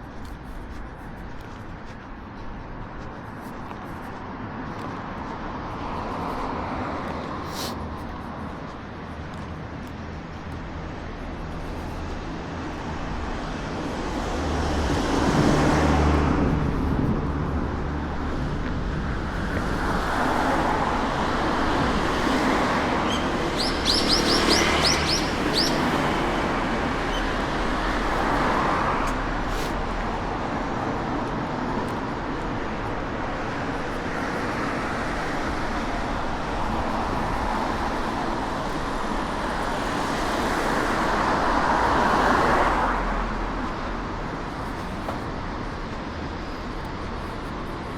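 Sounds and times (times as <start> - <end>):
cars passing: 0.0 - 47.9
bird chirping: 22.9 - 26.3.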